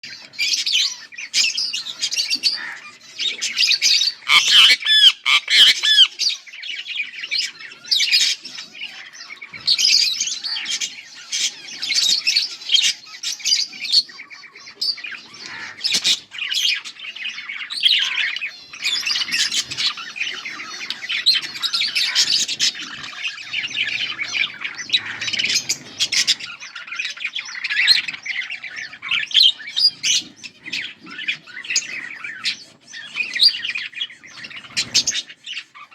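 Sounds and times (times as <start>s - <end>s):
budgerigars chirping: 0.1s - 35.9s
budgerigar squawks: 3.6s - 6.2s.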